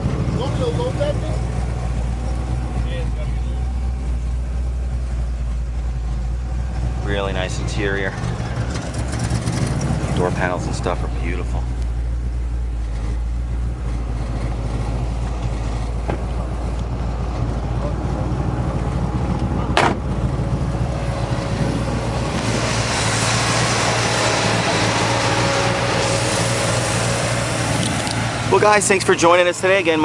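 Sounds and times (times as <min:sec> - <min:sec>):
engine idling with low rumble: 0:00.0 - 0:30.0
broad hiss: 0:21.5 - 0:28.9.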